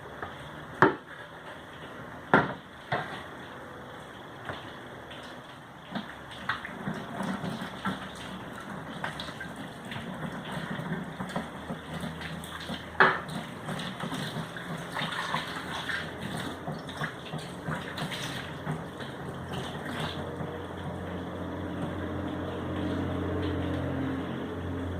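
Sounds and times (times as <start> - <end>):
water running: 4.5 - 23.8
small knocks and clatter: 9.9 - 15.6.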